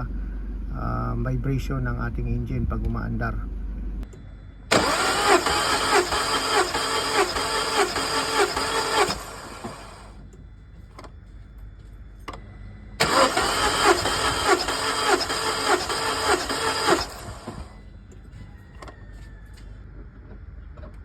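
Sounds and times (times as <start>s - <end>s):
starter motor cranking engine: 4.7s - 10.2s, 13.0s - 17.8s.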